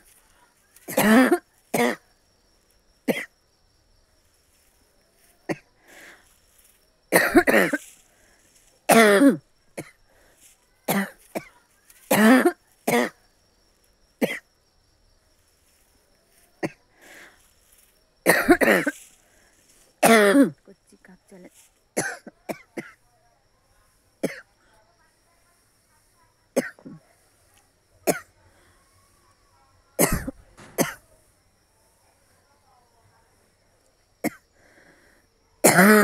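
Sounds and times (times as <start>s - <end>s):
person coughing: 0.9s - 2.0s, 7.2s - 7.8s, 8.9s - 10.0s, 12.1s - 13.2s, 18.3s - 18.9s, 20.0s - 20.6s, 22.0s - 23.0s, 26.6s - 27.0s, 28.1s - 28.3s, 30.0s - 31.0s, 35.6s - 36.0s.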